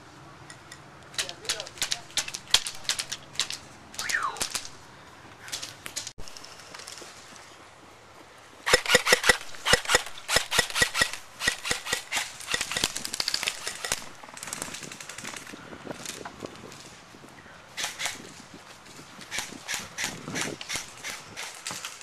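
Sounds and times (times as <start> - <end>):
airsoft guns firing: 1.1 - 4.8, 8.6 - 15.2.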